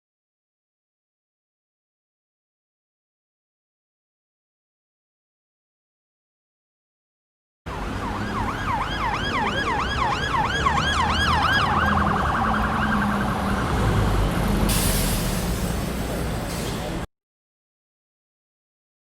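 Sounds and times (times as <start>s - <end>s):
electronic siren yelping and warbling: 7.7s - 13.8s
low vehicle rumble: 7.7s - 17.1s
hiss: 14.6s - 17.0s.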